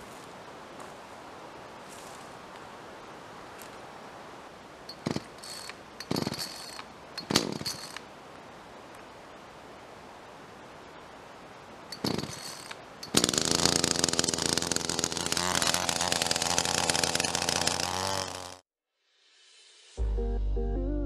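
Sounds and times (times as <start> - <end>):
electric power tool buzzing: 4.9 - 8.0, 12.0 - 18.6.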